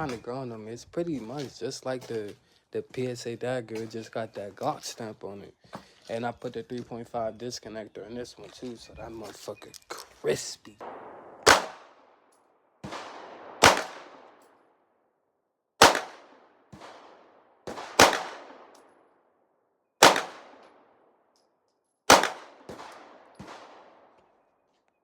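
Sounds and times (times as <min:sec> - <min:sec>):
faint gunshots: 0:10.8 - 0:12.1, 0:12.8 - 0:14.4, 0:15.8 - 0:18.8, 0:20.0 - 0:20.8, 0:22.1 - 0:24.2
pistol shots echoing: 0:10.8 - 0:14.6, 0:15.8 - 0:19.0, 0:20.0 - 0:21.1, 0:22.1 - 0:24.2.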